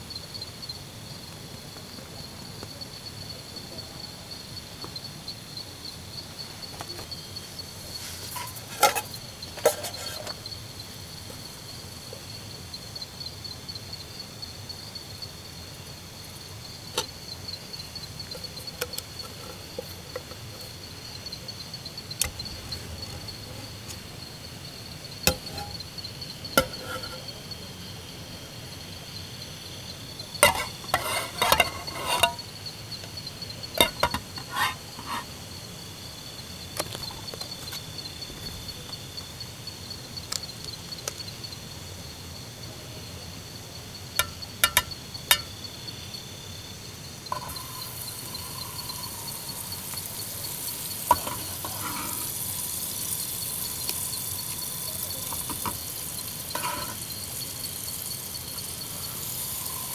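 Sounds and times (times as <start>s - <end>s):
insects chirring: 0.0s - 59.9s
food sizzling in a pan: 7.3s - 12.2s, 17.0s - 27.6s, 30.3s - 35.4s, 47.0s - 59.9s
metal cookware clinking: 8.3s - 10.3s, 25.3s - 25.9s, 26.6s - 27.3s, 30.4s - 32.5s, 33.8s - 35.3s, 44.2s - 45.6s, 47.3s - 53.2s, 53.9s - 59.9s.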